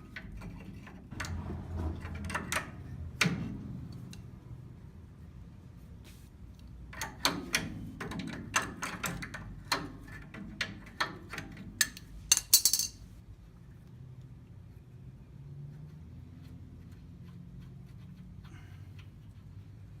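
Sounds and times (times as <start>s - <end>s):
metal hardware clinking: 10.6s - 13.1s.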